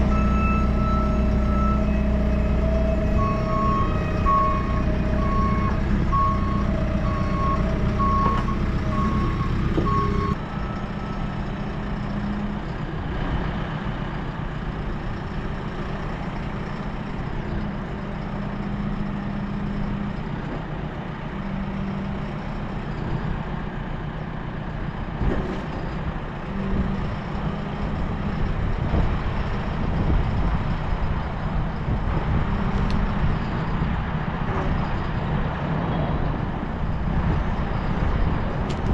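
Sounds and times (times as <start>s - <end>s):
reversing alarm beeping: 0.0s - 11.4s
diesel engine running: 0.0s - 38.9s.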